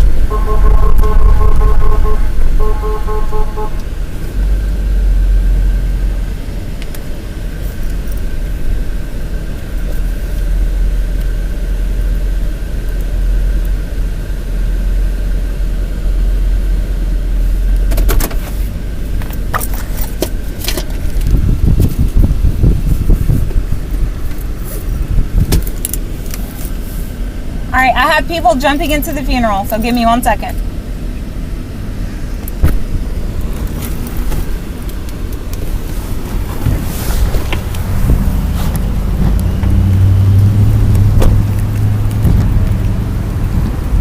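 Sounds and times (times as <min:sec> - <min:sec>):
vehicle engine low rumble: 0:00.0 - 0:44.0
short beeping tone: 0:00.2 - 0:03.8.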